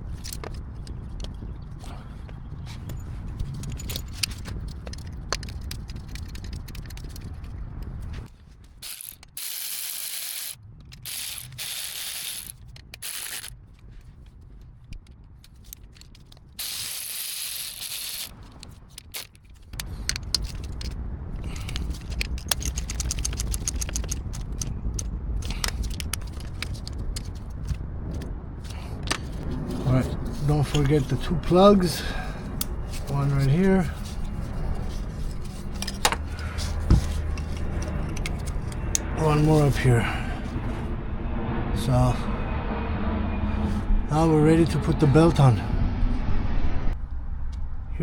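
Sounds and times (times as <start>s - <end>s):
low rumbling handling noise: 0.0s - 48.0s
ratchet wrench clicking: 8.8s - 13.5s, 16.6s - 18.3s, 18.9s - 27.8s.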